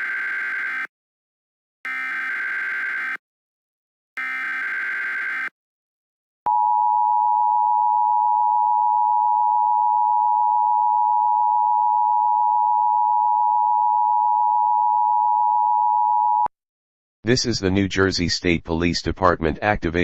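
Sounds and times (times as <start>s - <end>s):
harsh warbling data screech: 4.2s - 5.5s.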